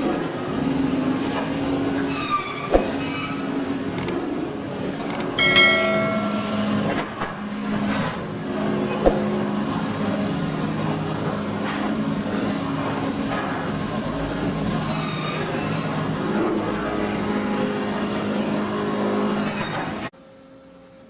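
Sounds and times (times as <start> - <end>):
metallic clank: 5.1 - 7.0.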